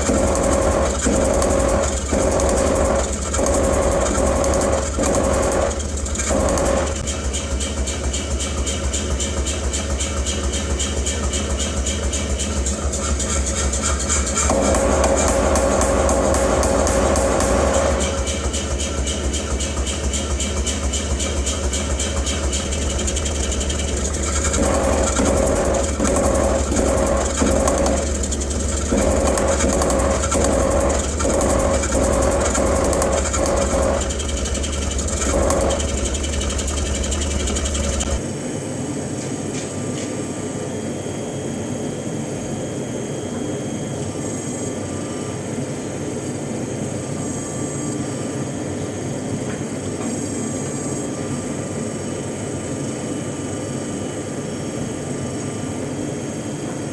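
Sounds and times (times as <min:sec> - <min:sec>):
power hammer motor humming: 0:00.0 - 0:38.2
hammer blows on hot steel: 0:14.1 - 0:22.6.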